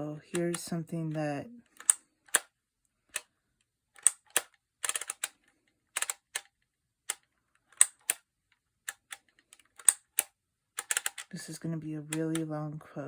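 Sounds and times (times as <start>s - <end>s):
label maker plastic clicks: 0.3s - 2.5s, 4.0s - 11.4s.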